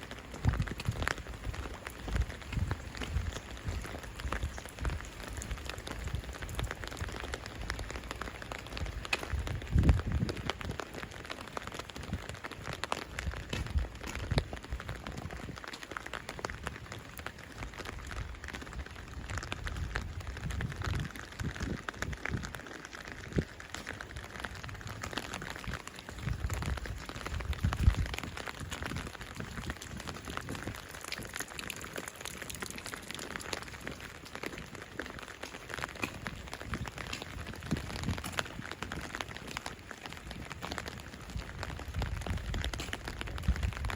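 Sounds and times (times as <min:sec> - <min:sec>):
rain pattering: 0:00.0 - 0:43.9.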